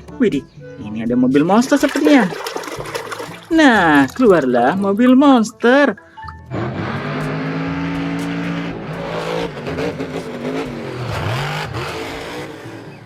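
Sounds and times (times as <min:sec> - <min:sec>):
truck engine revving: 0:06.3 - 0:13.0.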